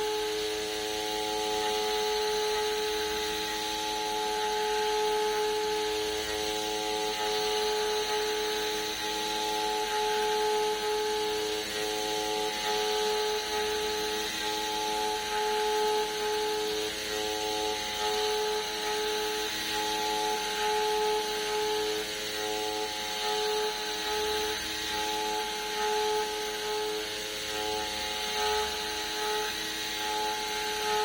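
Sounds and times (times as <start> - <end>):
mill spindle whine: 0.0 - 31.0.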